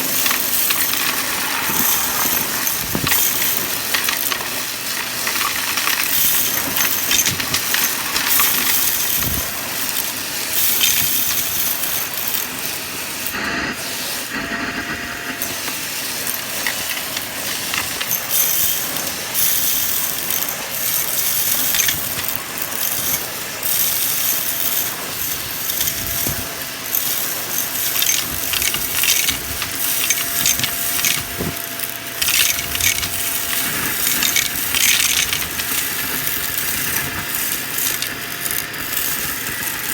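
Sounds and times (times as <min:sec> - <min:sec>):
debris crackling through vacuum: 0:00.0 - 0:08.5
vacuum motor whine: 0:09.0 - 0:19.4.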